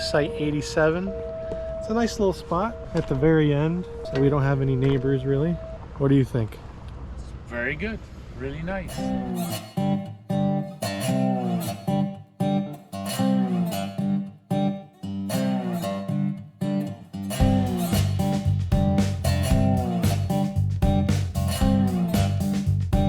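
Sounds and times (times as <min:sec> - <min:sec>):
plucked guitar: 0:08.9 - 0:23.0
bass line: 0:17.3 - 0:23.0.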